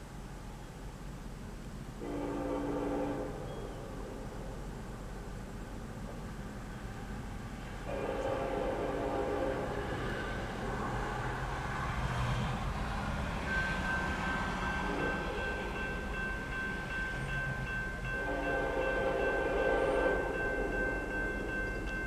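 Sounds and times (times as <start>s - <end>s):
diesel locomotives running: 0.0s - 22.0s
train horn blasts: 2.0s - 4.6s, 7.8s - 11.3s, 13.5s - 16.0s, 18.0s - 21.8s
high steady ringing tone: 13.4s - 22.0s.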